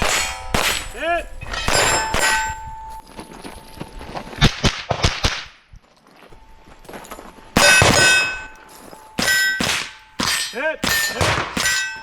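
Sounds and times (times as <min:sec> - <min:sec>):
rifle shots cracking: 0:00.0 - 0:02.6, 0:07.6 - 0:08.5, 0:09.2 - 0:11.8
steel target ringing: 0:00.0 - 0:03.0, 0:07.5 - 0:12.0.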